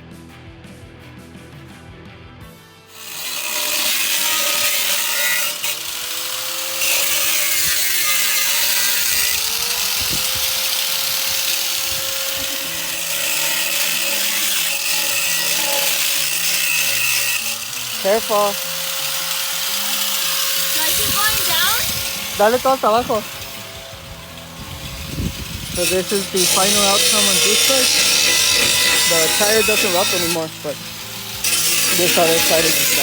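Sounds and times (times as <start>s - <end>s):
power tool cutting metal: 2.9s - 33.0s.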